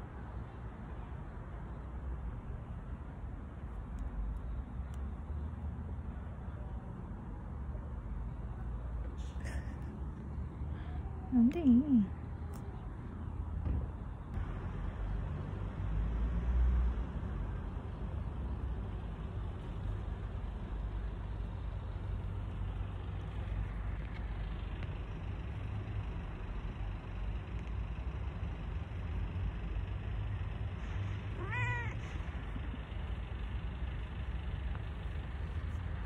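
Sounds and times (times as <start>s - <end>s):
kitten meowing: 31.4s - 32.0s.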